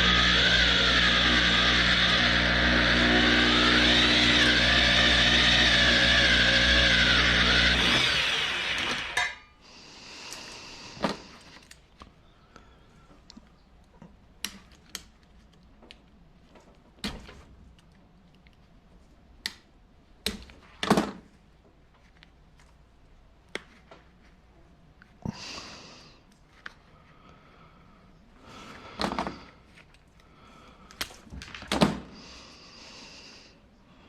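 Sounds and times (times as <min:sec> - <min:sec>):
drill running: 0:00.0 - 0:09.4.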